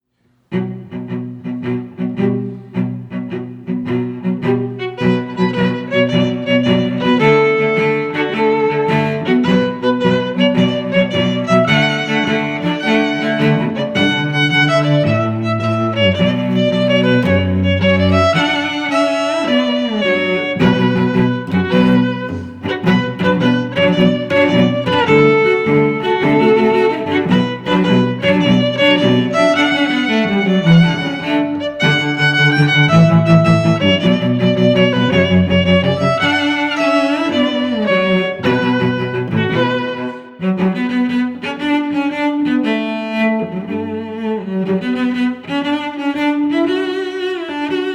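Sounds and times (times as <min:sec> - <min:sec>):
violin: 0:00.0 - 0:47.9
cello: 0:00.3 - 0:47.9.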